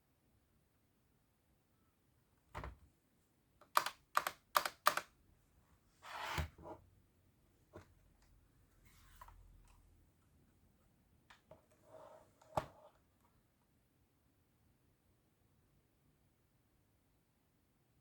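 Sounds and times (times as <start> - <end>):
mechanical keyboard keystrokes: 3.6 - 5.1.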